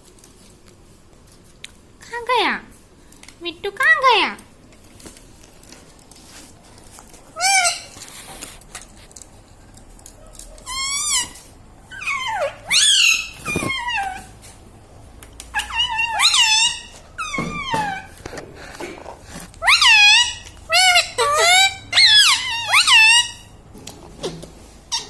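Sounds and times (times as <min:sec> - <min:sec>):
parakeet calling: 0:07.4 - 0:08.0, 0:19.6 - 0:23.6.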